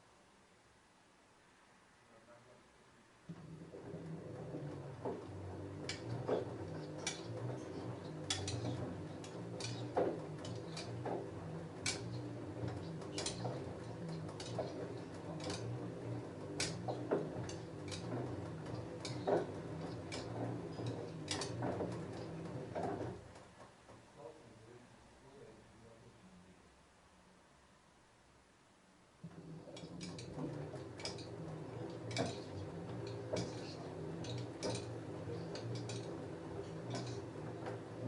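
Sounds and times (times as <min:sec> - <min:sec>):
washing machine motor hum: 0:03.2 - 0:24.4, 0:29.1 - 0:38.0.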